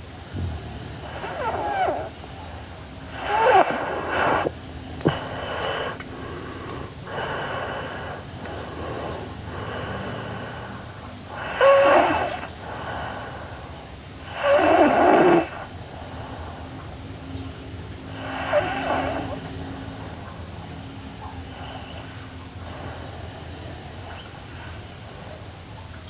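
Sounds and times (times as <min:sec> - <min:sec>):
soft breaths: 0:00.2 - 0:26.0
girl snoring: 0:00.3 - 0:02.4, 0:03.1 - 0:10.6, 0:11.3 - 0:13.6, 0:14.2 - 0:15.7, 0:18.1 - 0:19.5, 0:21.4 - 0:25.3.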